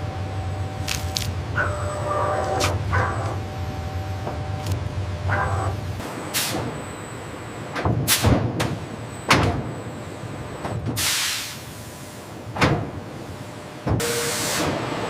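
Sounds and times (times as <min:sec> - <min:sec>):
mechanical knocks and clanks: 0:07.7 - 0:09.7, 0:12.5 - 0:13.0.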